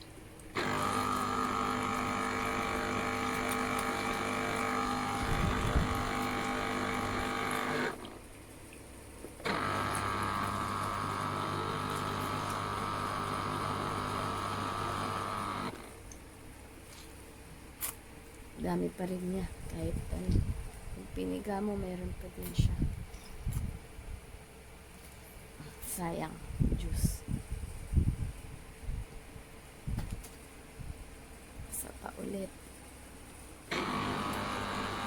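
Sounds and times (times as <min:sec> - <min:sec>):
citrus juicer motor humming: 0:00.5 - 0:08.3, 0:09.2 - 0:16.1, 0:33.7 - 0:35.0.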